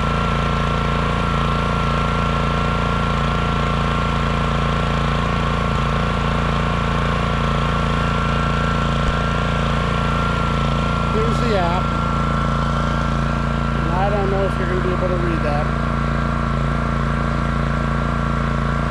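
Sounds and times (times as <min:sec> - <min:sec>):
generator engine drone: 0:00.0 - 0:18.9
high whine: 0:10.0 - 0:16.0.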